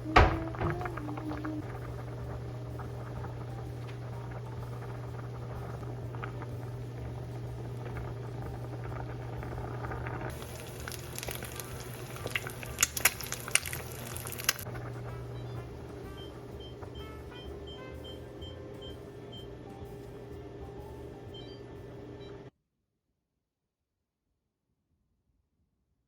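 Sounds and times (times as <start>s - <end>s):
stew bubbling in a pot: 0.0s - 17.0s
low hum: 0.0s - 22.5s.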